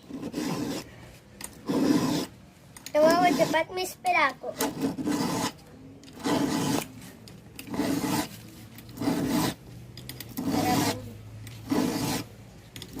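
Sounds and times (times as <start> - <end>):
file rasping on chainsaw chain: 0.1 - 0.9, 1.6 - 2.3, 3.0 - 3.7, 4.6 - 6.9, 7.6 - 9.6, 10.2 - 12.3.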